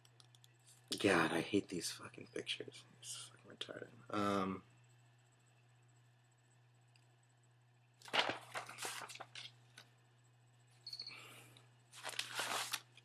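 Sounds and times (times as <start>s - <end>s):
steady low hum: 0.0s - 13.0s
paper rustling and crinkling: 8.0s - 9.5s, 11.9s - 13.0s.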